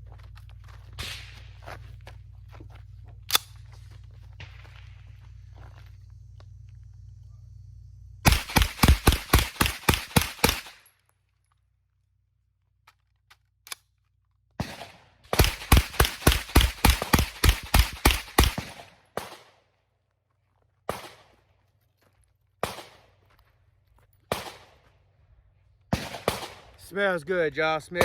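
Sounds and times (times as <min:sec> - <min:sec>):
gunshots: 0:01.0 - 0:01.5, 0:08.3 - 0:10.9, 0:14.6 - 0:19.6, 0:20.9 - 0:21.4, 0:22.6 - 0:23.1, 0:24.3 - 0:24.9, 0:25.9 - 0:26.8.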